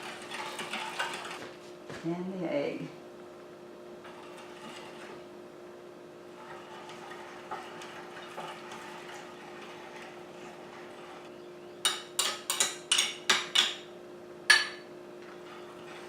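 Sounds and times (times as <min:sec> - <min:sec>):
utensils clinking against dishes: 0:11.8 - 0:13.9, 0:14.5 - 0:14.9.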